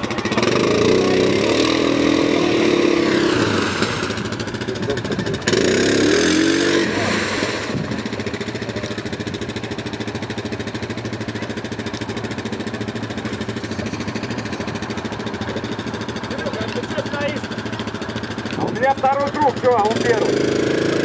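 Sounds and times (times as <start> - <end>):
atv engine revving and idling: 0.0 - 21.0.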